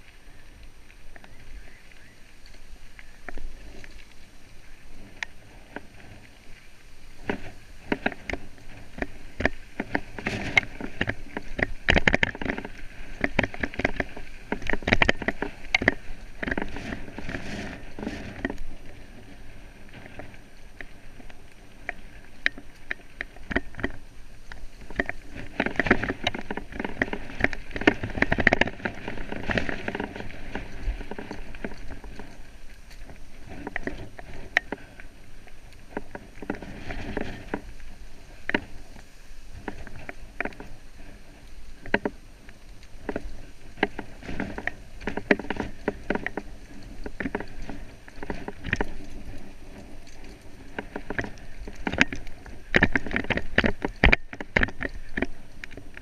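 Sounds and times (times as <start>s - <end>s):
off-road vehicle rattling over trail: 4.5s - 56.0s.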